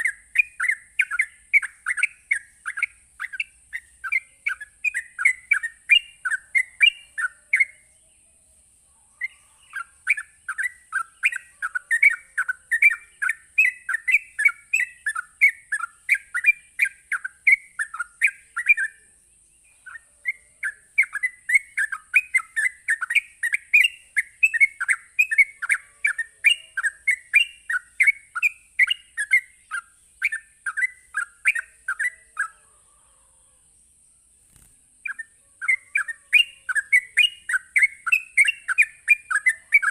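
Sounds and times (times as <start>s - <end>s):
bird rapid rolling song: 0.0s - 39.9s
steady high hiss: 33.7s - 35.3s.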